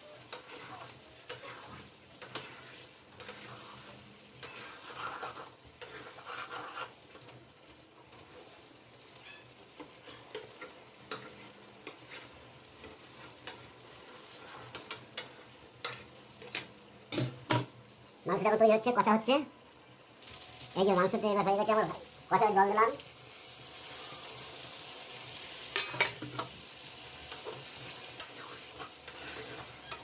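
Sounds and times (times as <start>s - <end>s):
food sizzling in a pan: 0.0s - 30.0s
utensil scraping pan: 0.2s - 7.3s, 9.8s - 16.6s, 27.3s - 30.0s.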